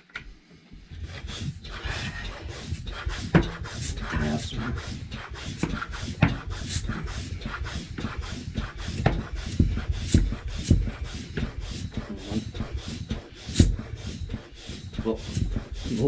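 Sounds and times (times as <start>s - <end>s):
rubber tyre rubbing and squeaking: 0.9s - 16.0s.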